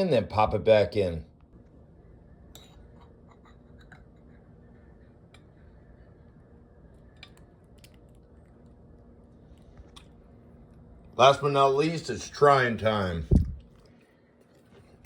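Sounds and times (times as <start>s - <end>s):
air fryer fan humming: 8.3s - 13.8s.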